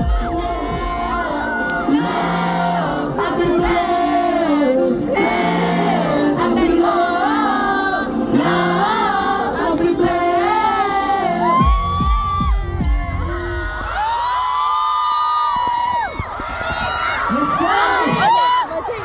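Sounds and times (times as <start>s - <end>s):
pop backing track: 0.0s - 14.0s
person singing pop melody: 0.0s - 14.2s.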